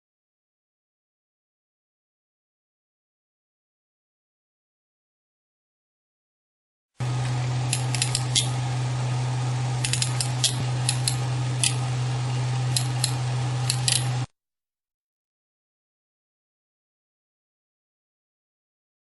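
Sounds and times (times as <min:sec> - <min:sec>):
low electrical hum: 0:07.0 - 0:14.3
small metal parts clinking: 0:07.7 - 0:08.5, 0:09.8 - 0:11.8, 0:12.8 - 0:14.1.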